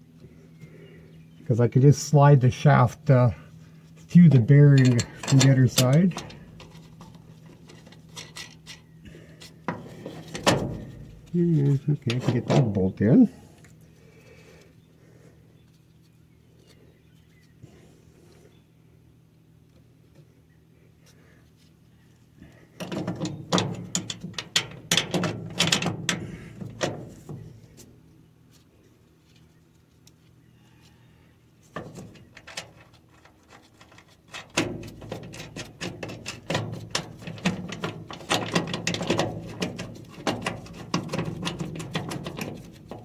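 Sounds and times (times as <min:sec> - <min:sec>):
metal bolts and parts clinking: 0:04.1 - 0:08.8, 0:09.4 - 0:13.0, 0:22.8 - 0:27.4, 0:31.8 - 0:43.0.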